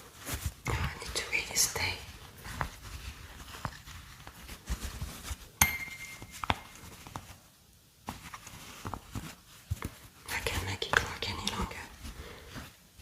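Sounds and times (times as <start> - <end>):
thin ringing tone: 5.6 - 6.5.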